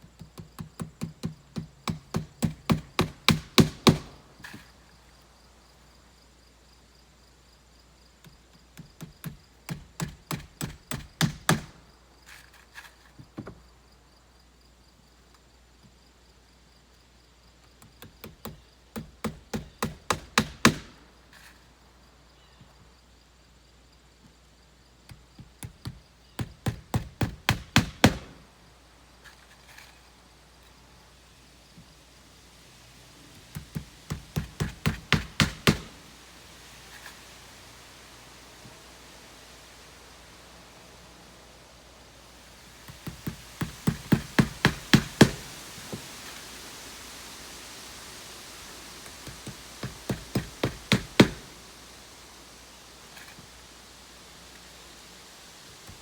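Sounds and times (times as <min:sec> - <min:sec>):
hammer driving nails into shingles: 0:00.0 - 0:04.7, 0:08.7 - 0:11.8, 0:17.8 - 0:21.5, 0:25.1 - 0:28.4, 0:33.3 - 0:36.0, 0:42.9 - 0:45.5, 0:49.2 - 0:51.5.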